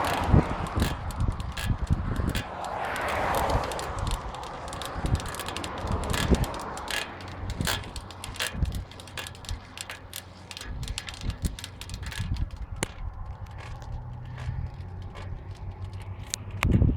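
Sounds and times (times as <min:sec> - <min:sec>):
bicycle wheel ticking and creaking: 0:00.0 - 0:16.9.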